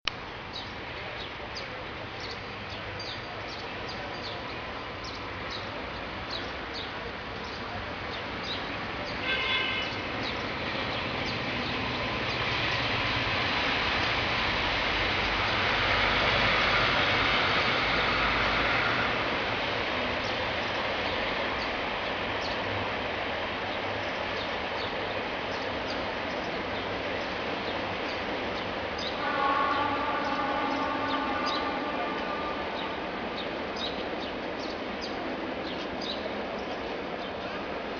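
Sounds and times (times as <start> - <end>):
city background hiss: 0.1 - 37.9
small birds chirping: 32.7 - 37.6.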